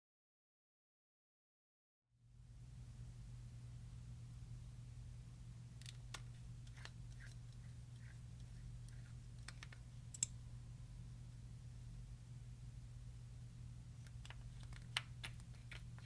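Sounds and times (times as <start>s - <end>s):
steady low hum: 2.2s - 16.0s.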